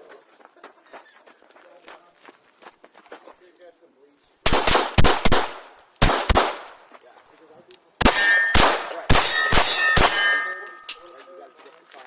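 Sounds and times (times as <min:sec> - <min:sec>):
pistol shots: 0:04.5 - 0:06.8, 0:08.0 - 0:11.0
steel plate ringing: 0:08.0 - 0:11.2.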